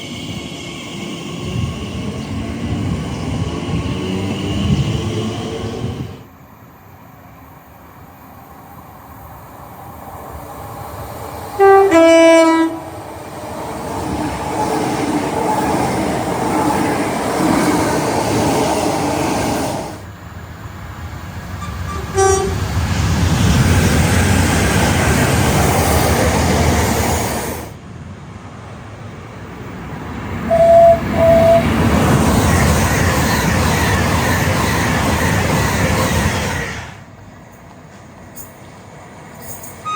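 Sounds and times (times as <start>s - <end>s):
train rumbling past: 0.0s - 39.9s
short train horn toots: 11.6s - 12.8s, 21.6s - 22.6s, 30.5s - 31.6s
two-tone train horn: 11.6s - 12.9s, 21.6s - 22.6s, 30.5s - 31.7s.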